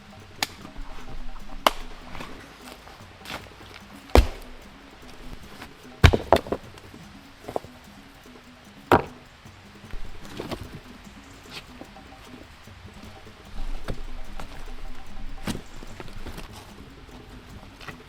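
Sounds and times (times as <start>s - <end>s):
hand tool chopping wood: 0.4s - 6.9s.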